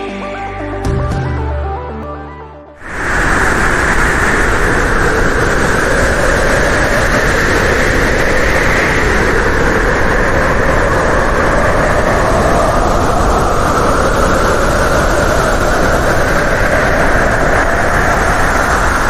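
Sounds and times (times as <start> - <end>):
short music intro: 0.0 - 2.8
strong wind rushing: 2.8 - 19.0.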